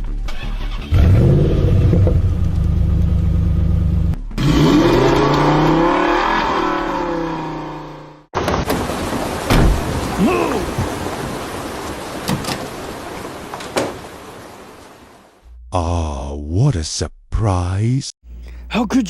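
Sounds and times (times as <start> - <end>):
vehicle driving off: 0.4 - 8.2
car engine revving: 0.9 - 8.2.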